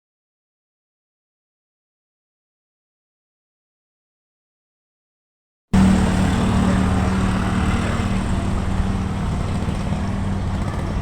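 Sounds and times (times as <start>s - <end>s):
engine humming and rumbling: 5.8s - 11.0s.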